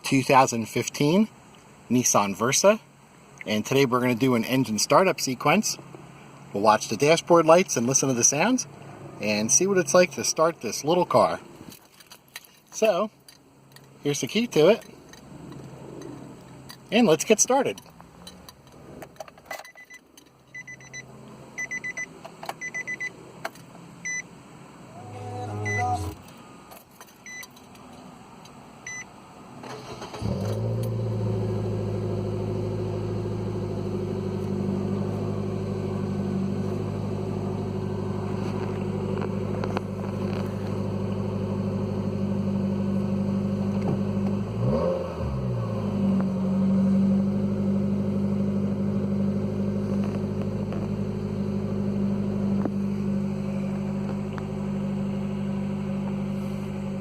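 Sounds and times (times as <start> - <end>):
short electronic beeps: 19.7 - 21.0, 21.6 - 23.1, 25.0 - 26.2
car engine idling: 24.3 - 26.3, 29.8 - 57.0.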